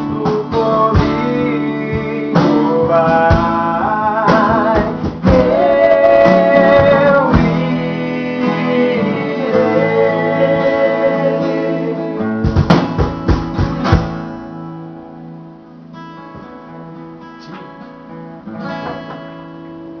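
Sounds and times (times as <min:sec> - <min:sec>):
acoustic guitar strummed chords: 0:00.0 - 0:20.0
voices singing a hymn: 0:00.2 - 0:12.8.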